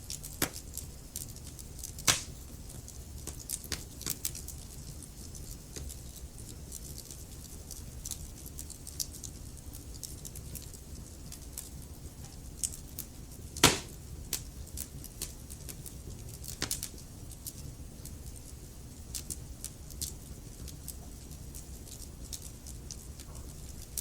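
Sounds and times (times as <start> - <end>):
wood fire crackling: 0.0 - 24.0
loud pop from fire: 2.0 - 2.4, 13.6 - 14.0.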